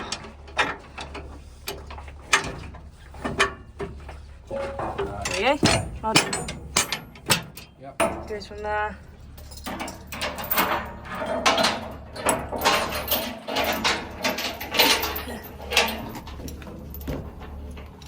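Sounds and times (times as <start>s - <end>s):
steel chain clanking: 4.4s - 18.0s.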